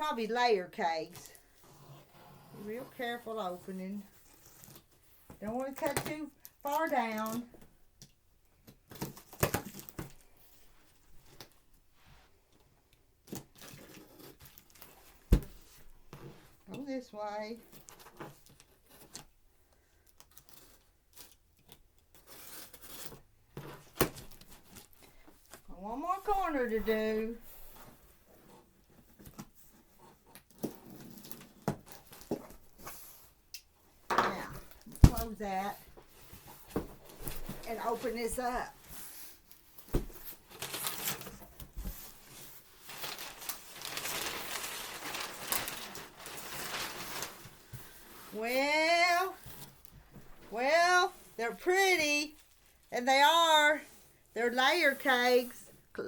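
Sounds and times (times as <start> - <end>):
packaging rustling and crinkling: 13.2 - 16.7, 17.6 - 33.5, 34.4 - 50.5, 52.2 - 52.9.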